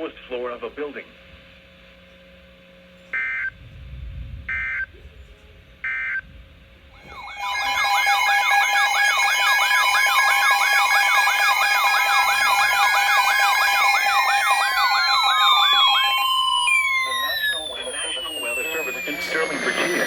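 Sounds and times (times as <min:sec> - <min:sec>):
steady alarm tones: 0:06.9 - 0:20.0
rising and falling siren wails: 0:07.0 - 0:20.0.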